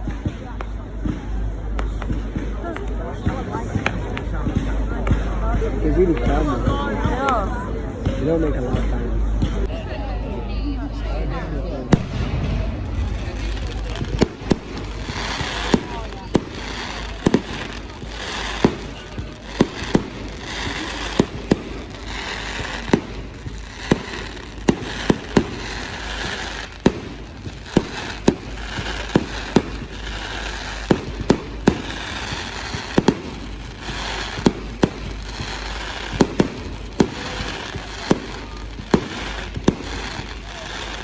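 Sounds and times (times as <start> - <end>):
firework bangs: 0.0 - 9.8, 11.8 - 41.0
firework crackling hiss: 11.9 - 41.0.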